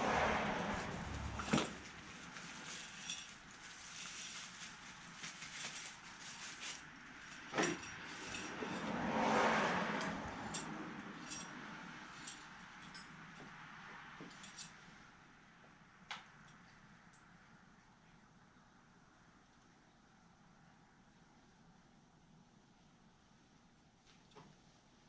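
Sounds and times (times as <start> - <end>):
rustling: 0.7 - 8.8.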